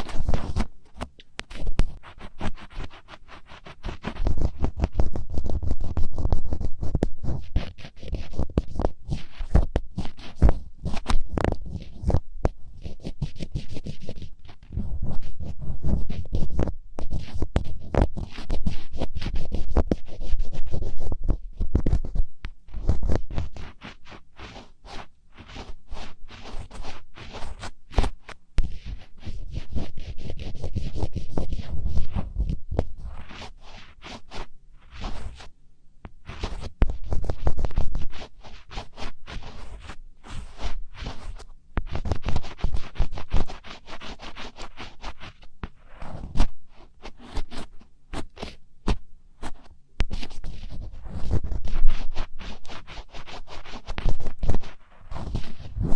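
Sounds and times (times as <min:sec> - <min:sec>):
crisp rapid scratching: 0:00.0 - 0:35.5, 0:36.2 - 0:55.9.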